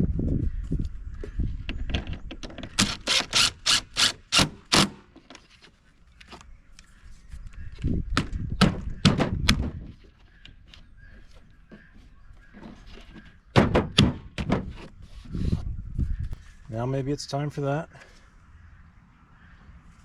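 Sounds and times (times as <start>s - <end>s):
parts knocking and clattering: 8.1s - 10.8s.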